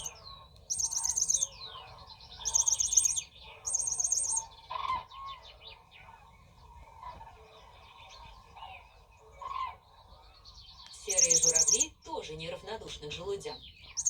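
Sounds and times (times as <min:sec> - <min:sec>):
high pulsing chirped trills: 0:00.0 - 0:01.6, 0:02.4 - 0:04.5, 0:11.0 - 0:11.9
soft bird-like chirps: 0:00.0 - 0:06.8, 0:09.5 - 0:12.0, 0:13.6 - 0:14.0.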